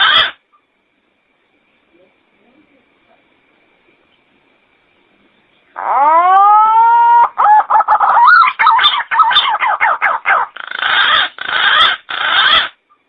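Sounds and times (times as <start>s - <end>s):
pigeon harsh raspy calls: 0.0s - 0.4s, 5.8s - 12.8s
pigeon warbling whistled notes: 5.8s - 12.8s.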